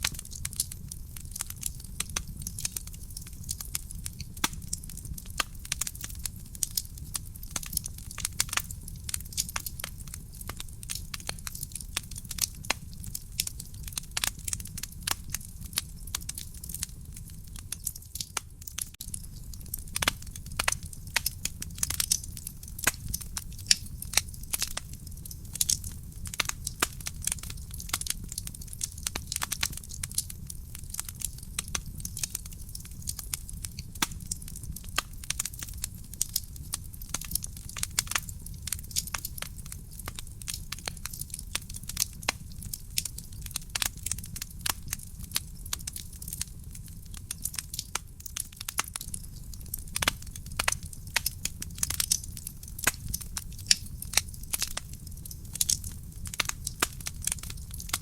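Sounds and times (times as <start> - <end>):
wood fire crackling: 0.0 - 58.0.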